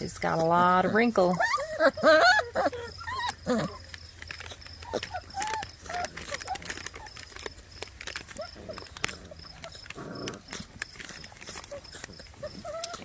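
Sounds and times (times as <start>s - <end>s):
puppies whining and yipping: 0.0s - 13.0s
clicks and scuffling: 2.7s - 13.0s.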